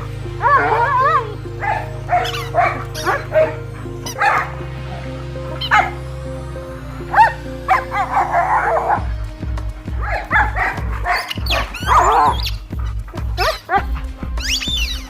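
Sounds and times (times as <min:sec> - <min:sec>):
background music with held notes: 0:00.0 - 0:15.0
dog whining: 0:00.4 - 0:04.5, 0:10.0 - 0:15.0
dog yelping: 0:00.4 - 0:04.5, 0:10.0 - 0:15.0.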